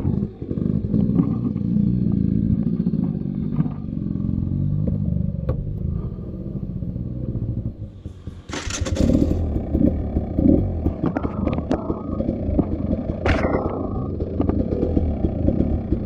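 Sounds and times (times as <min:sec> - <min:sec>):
motorcycle engine running: 0:00.0 - 0:16.0
knocks and rattles: 0:08.0 - 0:15.3.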